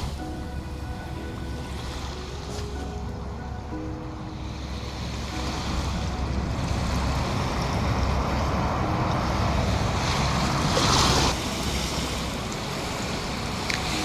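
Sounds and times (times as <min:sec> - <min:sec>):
ocean surf washing ashore: 0:00.0 - 0:14.0
wind buffeting microphone: 0:00.0 - 0:14.0.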